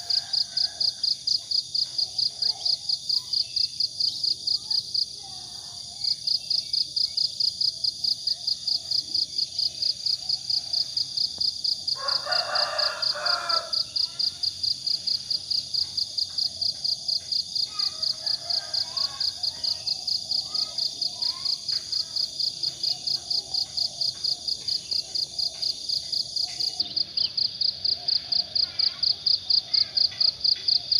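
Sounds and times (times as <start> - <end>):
rooster crowing: 0.0 - 1.2, 11.9 - 14.3, 18.0 - 19.7
crickets chirping: 0.0 - 30.9.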